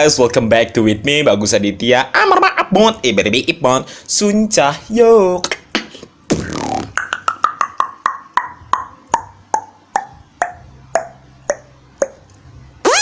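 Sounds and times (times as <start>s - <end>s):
mouth clicks: 6.3s - 8.9s.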